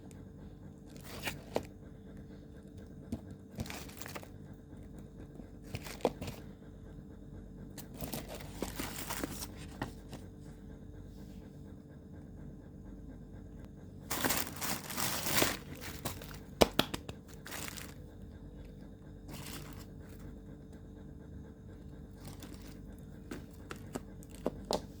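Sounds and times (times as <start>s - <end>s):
packaging crinkling and tearing: 14.1s - 18.0s, 19.3s - 19.9s.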